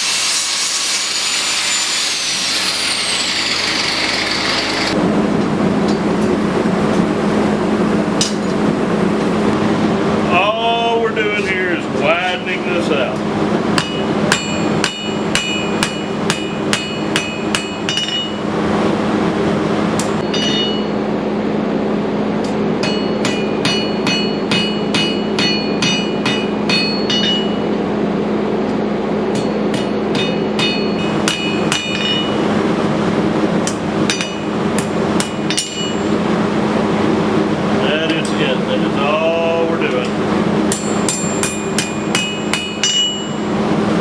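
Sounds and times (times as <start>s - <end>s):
hammer striking steel on anvil: 13.8s - 18.4s, 20.0s - 21.0s, 22.4s - 27.7s, 29.3s - 32.4s, 33.6s - 36.1s, 40.7s - 43.5s.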